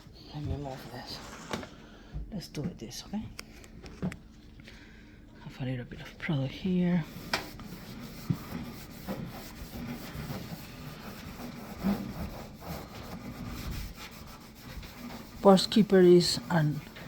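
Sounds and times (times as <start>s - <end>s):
cloth scrubbing stainless steel: 7.0s - 17.0s.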